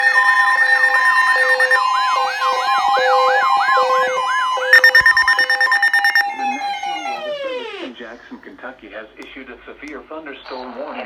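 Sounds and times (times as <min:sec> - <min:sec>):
steady electronic tones: 0:00.0 - 0:01.8, 0:04.8 - 0:06.2
siren-like sweeping alarm tone: 0:00.0 - 0:06.2.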